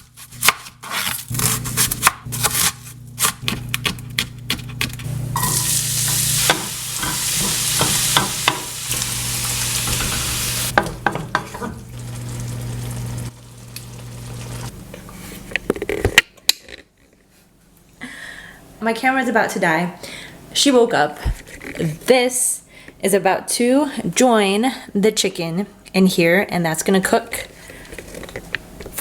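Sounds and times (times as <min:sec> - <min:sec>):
food sizzling in a pan: 0:05.3 - 0:14.7.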